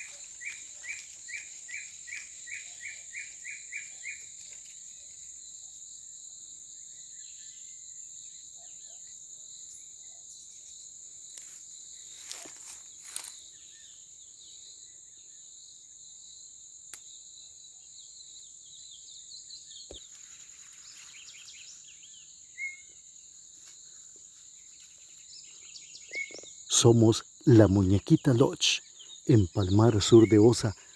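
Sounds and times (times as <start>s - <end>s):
high-pitched insect chorus: 0.0s - 30.9s.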